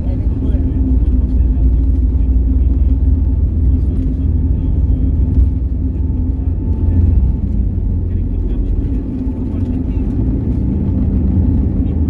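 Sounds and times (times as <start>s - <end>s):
airplane cabin rumble and hum: 0.0s - 12.0s.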